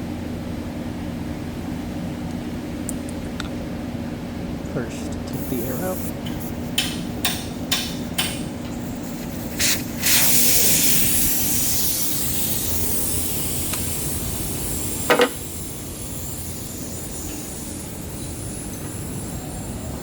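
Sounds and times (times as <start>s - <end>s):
compressed air hissing: 5.3s - 20.0s.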